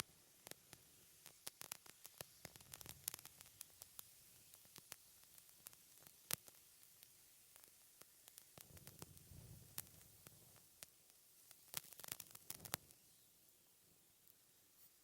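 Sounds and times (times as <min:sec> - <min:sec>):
candle wick crackling: 0:00.0 - 0:15.0
faint steady hiss: 0:00.0 - 0:15.0.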